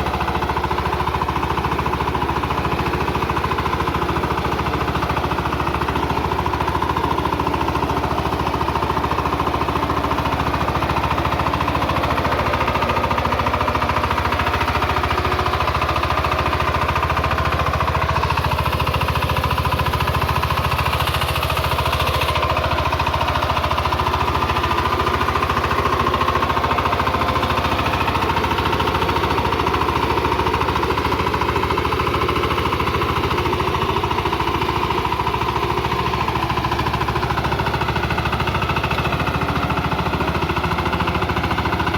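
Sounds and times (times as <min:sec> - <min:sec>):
diesel engine chugging: 0:00.0 - 0:41.9.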